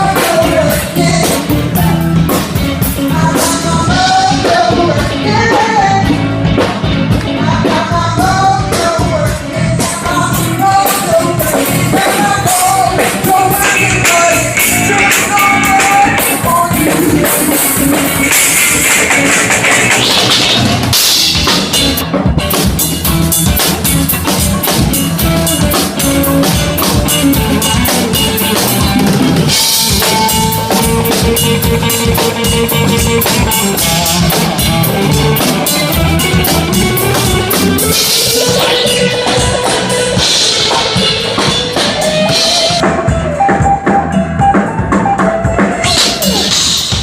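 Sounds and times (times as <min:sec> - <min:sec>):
bass: 0:00.0 - 0:47.0
blues band playing: 0:00.0 - 0:47.0
drum kit steady beat: 0:00.0 - 0:47.0
lead instrument bending notes: 0:10.0 - 0:46.8.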